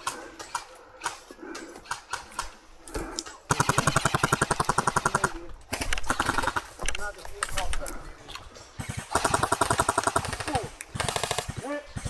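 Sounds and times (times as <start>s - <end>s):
airsoft rifle full-auto burst: 3.5s - 6.7s, 8.8s - 12.0s.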